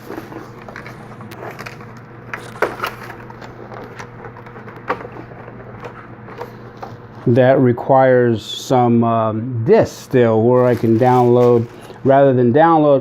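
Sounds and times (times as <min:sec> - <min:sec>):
clicks and knocks of handling: 0:00.0 - 0:07.3
steady low hum: 0:00.0 - 0:13.0.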